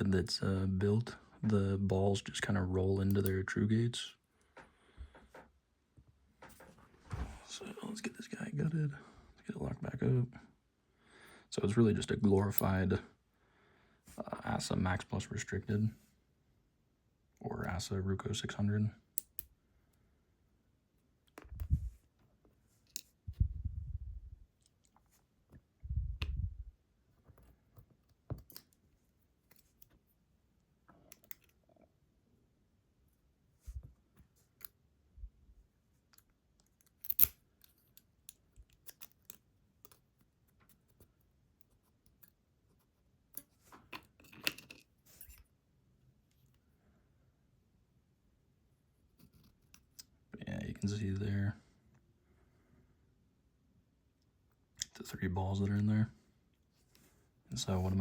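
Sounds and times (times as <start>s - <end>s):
lock parts clicking: 19.2s - 19.5s, 31.0s - 31.6s, 36.0s - 41.1s.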